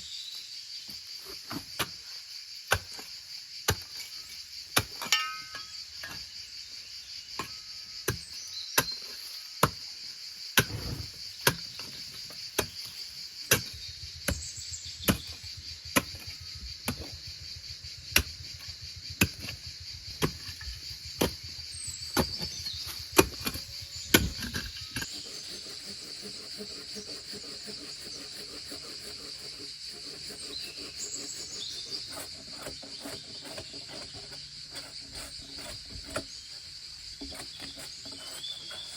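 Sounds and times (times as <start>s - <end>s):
crickets chirping: 0.0s - 38.9s.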